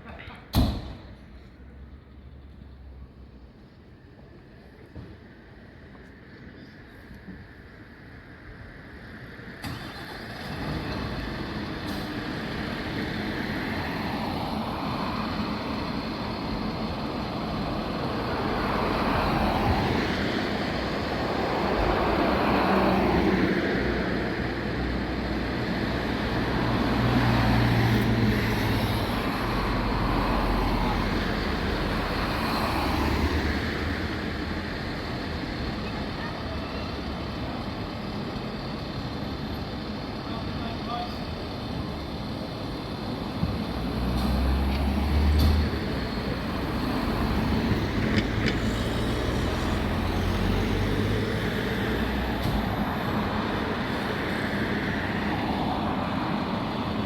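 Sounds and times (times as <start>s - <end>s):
vehicles passing on road: 0.0s - 57.0s
voices: 39.8s - 42.4s.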